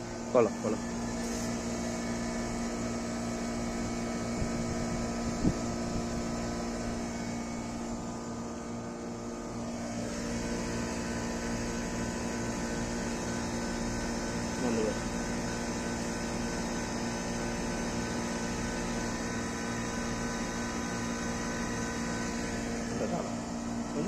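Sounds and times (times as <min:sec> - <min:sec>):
air conditioner humming: 0:00.0 - 0:24.0.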